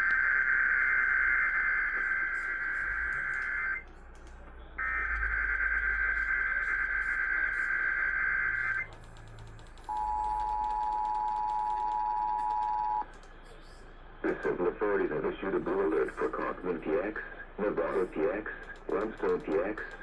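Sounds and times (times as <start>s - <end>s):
two-tone attention signal: 9.9s - 13.0s.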